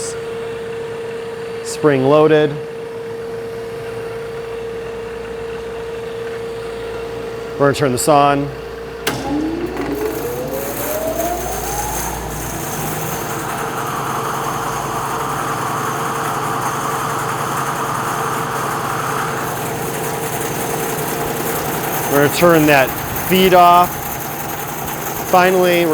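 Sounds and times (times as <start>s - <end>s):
power feeder motor whine: 8.5s - 25.9s
bandsaw humming: 9.0s - 25.9s.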